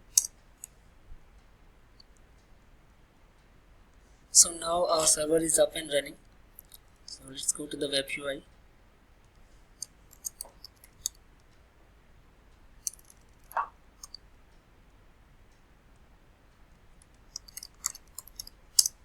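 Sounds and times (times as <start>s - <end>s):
mouse and keyboard clicks: 12.8s - 14.2s, 17.3s - 18.9s.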